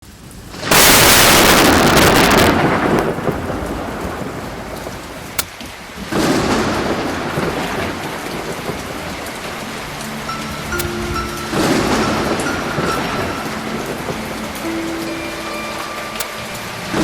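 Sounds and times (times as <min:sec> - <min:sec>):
rain drumming on a roof: 0:00.0 - 0:17.0
thunder rolling: 0:00.0 - 0:17.0
sharp tick: 0:10.7 - 0:11.0.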